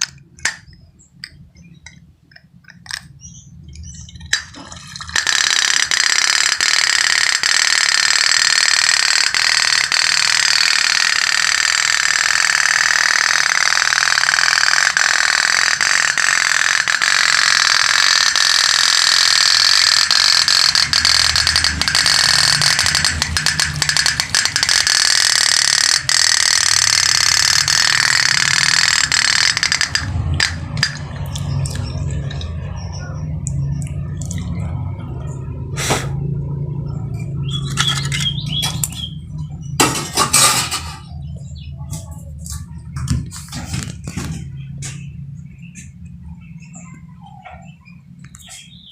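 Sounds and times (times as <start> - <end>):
toy steam boat rattling buzz: 4.1 - 32.6, 37.6 - 39.0, 39.8 - 41.1.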